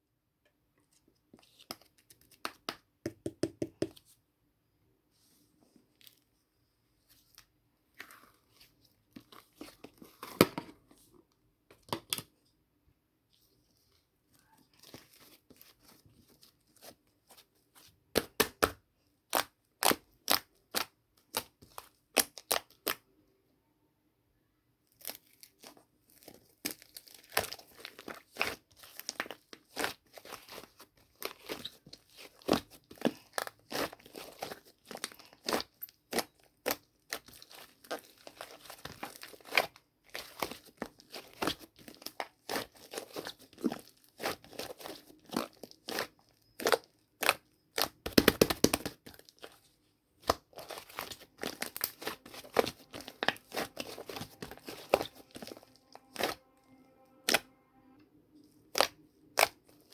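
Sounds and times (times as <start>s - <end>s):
clay crackling and crunching: 24.9s - 57.5s, 58.4s - 59.9s.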